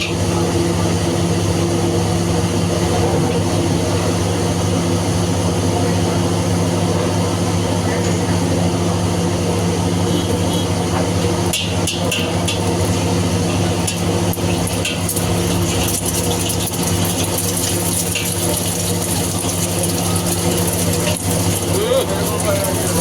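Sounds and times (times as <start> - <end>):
loud mechanical hum: 0.0 - 23.0
utensil clicking against pan: 11.5 - 12.9, 13.8 - 21.8.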